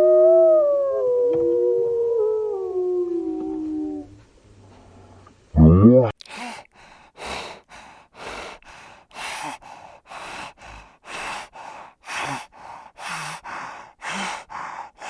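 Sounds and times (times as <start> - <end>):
heavy rhythmic panting: 6.4 - 15.0.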